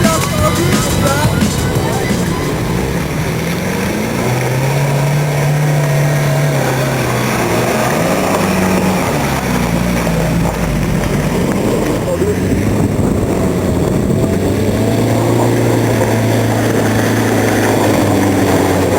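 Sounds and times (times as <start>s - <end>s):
car engine running off-road: 0.0s - 18.9s.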